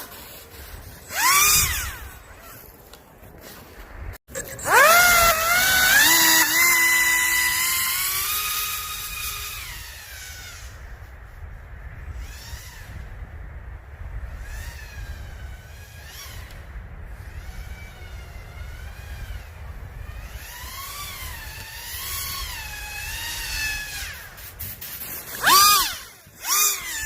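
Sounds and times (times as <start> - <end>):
model airboat motor whining: 1.1 - 2.0, 4.4 - 10.4, 25.4 - 27.0.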